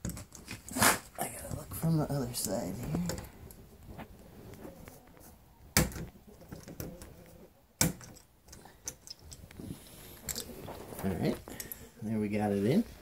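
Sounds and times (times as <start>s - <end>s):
metal parts clicking and rattling: 7.8s - 9.6s.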